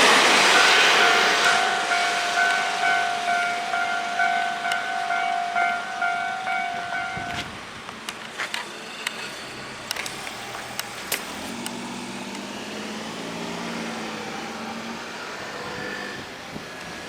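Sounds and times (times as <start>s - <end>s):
sharp clicks: 9.8s - 12.5s
car engine passing: 10.0s - 16.2s.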